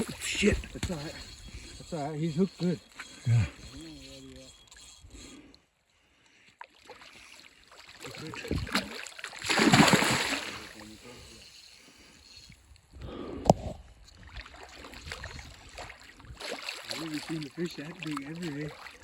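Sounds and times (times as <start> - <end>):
fish splashing in water: 6.7 - 10.8.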